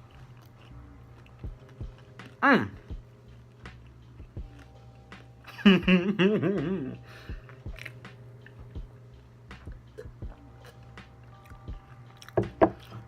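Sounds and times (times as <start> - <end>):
man chewing food: 0.0 - 5.5, 6.8 - 13.0
man humming mmm: 5.9 - 7.2.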